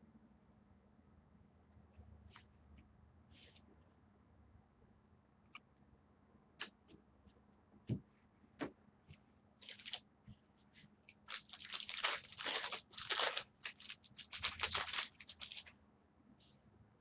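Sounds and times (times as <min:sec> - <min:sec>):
wrapper tearing and crinkling: 0:09.6 - 0:10.0, 0:11.2 - 0:15.7.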